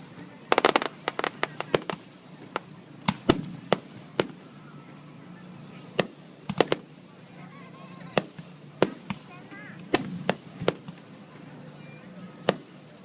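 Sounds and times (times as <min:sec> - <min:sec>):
fireworks bangs: 0:00.5 - 0:04.4, 0:06.0 - 0:06.9, 0:08.1 - 0:11.1.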